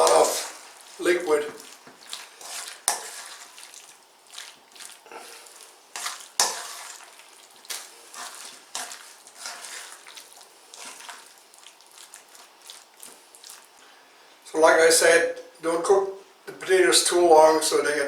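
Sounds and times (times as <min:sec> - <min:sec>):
spoon stirring wet salad: 0:00.0 - 0:14.0.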